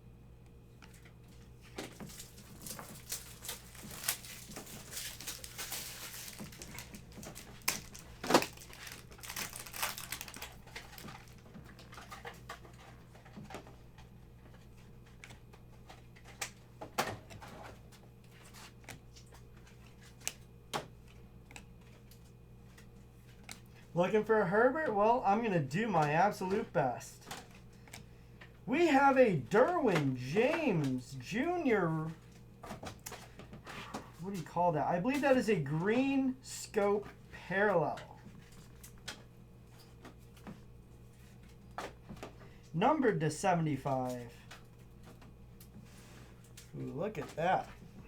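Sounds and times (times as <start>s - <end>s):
wrapper crinkling: 1.7s - 12.2s.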